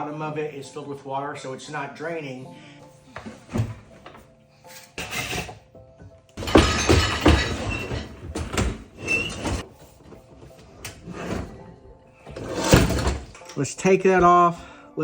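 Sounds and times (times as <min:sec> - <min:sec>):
background music: 0:00.0 - 0:15.0
dishwasher parts clattering: 0:05.0 - 0:05.7, 0:06.4 - 0:13.8.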